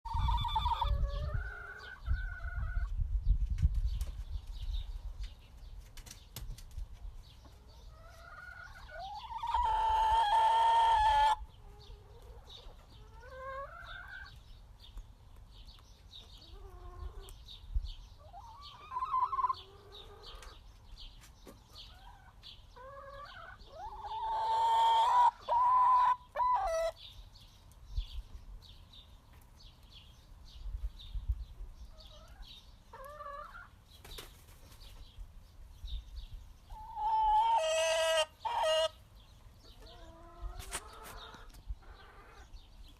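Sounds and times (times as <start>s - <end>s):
chickens clucking: 0.0s - 35.3s, 36.2s - 42.9s
chicken drawn-out calls: 0.1s - 2.9s, 7.6s - 14.4s, 18.2s - 20.6s, 21.8s - 27.0s, 32.0s - 33.8s, 36.7s - 39.0s, 39.8s - 42.6s.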